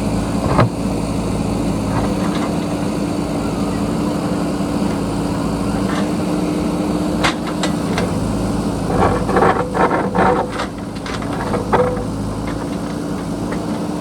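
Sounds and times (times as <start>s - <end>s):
diesel engine running: 0.0s - 14.0s
bucket clanking and scraping rock: 8.9s - 14.0s.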